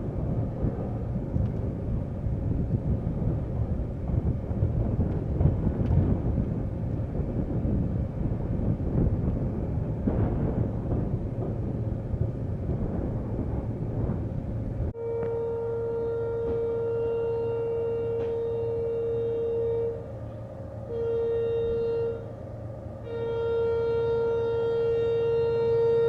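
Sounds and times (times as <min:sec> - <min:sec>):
train wheels rumbling on track: 0:00.0 - 0:26.0
wind noise on microphone: 0:00.0 - 0:26.0.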